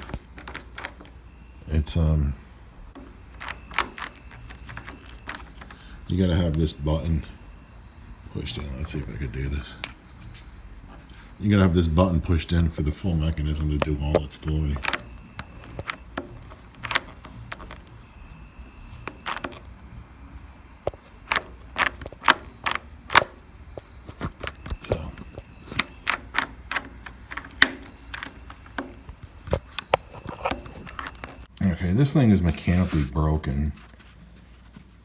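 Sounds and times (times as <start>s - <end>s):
door latch clicking: 0.0s - 1.2s, 3.0s - 6.8s, 12.5s - 18.1s, 18.8s - 19.8s, 20.9s - 31.5s
crickets chirring: 0.0s - 35.0s.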